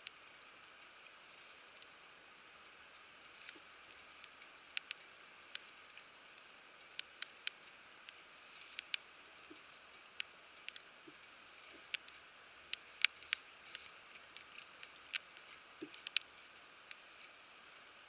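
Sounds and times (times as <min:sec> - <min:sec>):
faint steady hiss: 0:00.0 - 0:18.0
campfire crackling and popping: 0:03.4 - 0:17.3.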